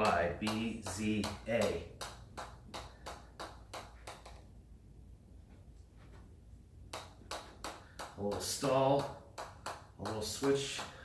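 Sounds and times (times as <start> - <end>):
mallet tapping: 0.0 - 4.4.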